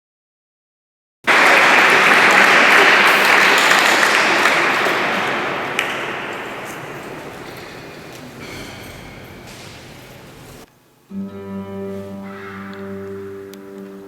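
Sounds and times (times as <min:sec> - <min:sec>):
audience applause: 0:01.3 - 0:10.6.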